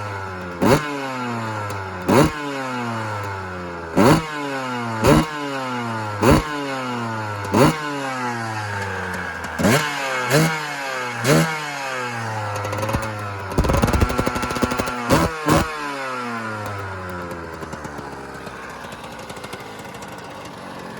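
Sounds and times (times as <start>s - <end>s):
two-stroke motorcycle engine revving: 0.0s - 20.9s.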